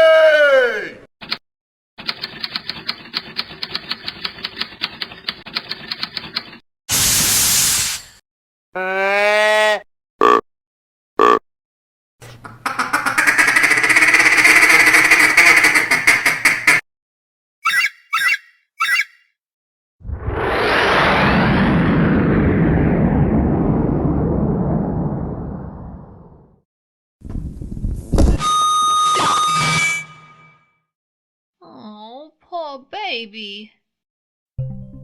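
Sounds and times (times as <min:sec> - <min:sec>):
fast clattering clicks: 0:02.0 - 0:06.6
burst of hiss: 0:06.9 - 0:08.2
quick chirps: 0:17.6 - 0:19.3.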